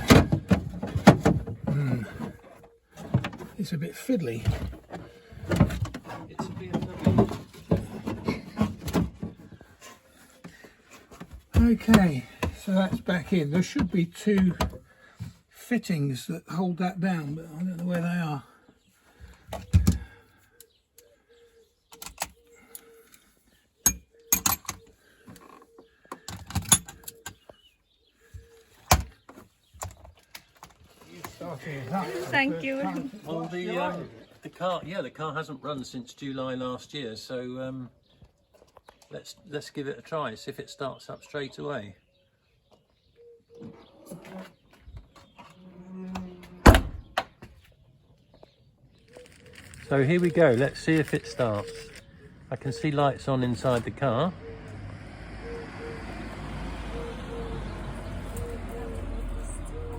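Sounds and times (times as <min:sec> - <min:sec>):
car boot lid thunk: 0:46.6 - 0:47.2.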